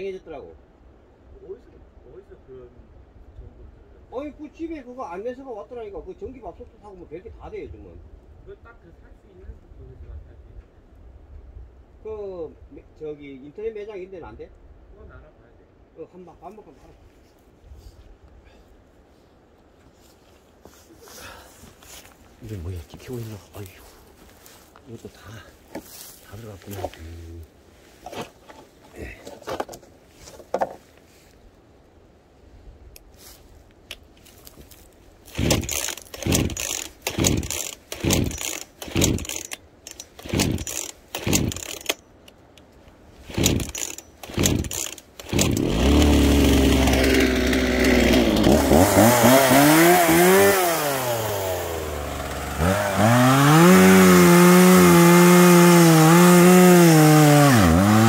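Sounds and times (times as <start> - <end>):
chainsaw engine idling and revving: 35.3 - 42.0, 43.3 - 58.0
chainsaw starter cord pulls: 35.3 - 42.0, 43.2 - 58.0.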